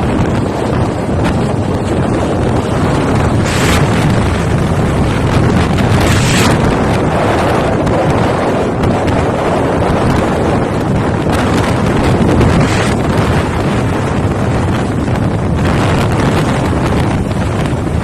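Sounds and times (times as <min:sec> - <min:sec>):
wind rushing over microphone: 0:00.0 - 0:18.0.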